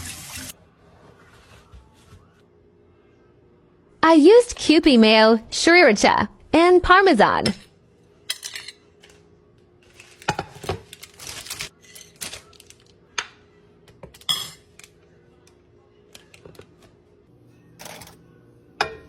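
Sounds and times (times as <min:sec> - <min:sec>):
kitchen utensils and dishes clicking: 0:08.3 - 0:08.9.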